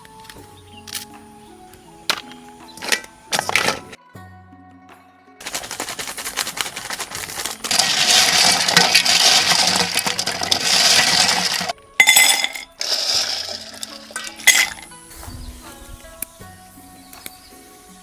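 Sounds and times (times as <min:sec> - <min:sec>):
snail shells clattering: 0:02.1 - 0:04.0, 0:05.4 - 0:15.0.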